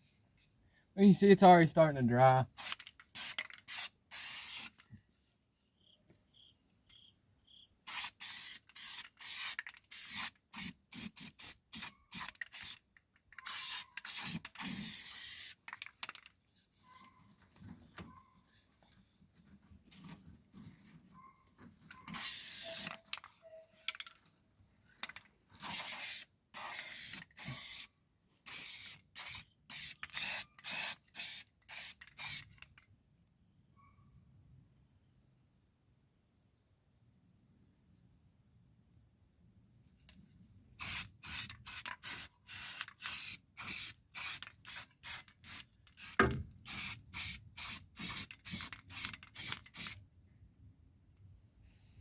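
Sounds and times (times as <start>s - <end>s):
crickets chirping: 0.0s - 52.0s
aerosol can spraying: 2.6s - 4.8s, 7.9s - 12.8s, 13.4s - 15.6s, 22.1s - 23.0s, 25.6s - 27.9s, 28.5s - 32.5s, 40.8s - 50.0s.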